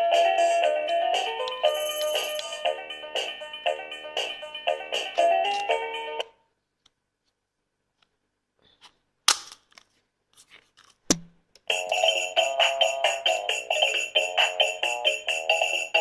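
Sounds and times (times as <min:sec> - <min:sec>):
background music with steady beat: 0:00.0 - 0:06.3, 0:11.7 - 0:16.0.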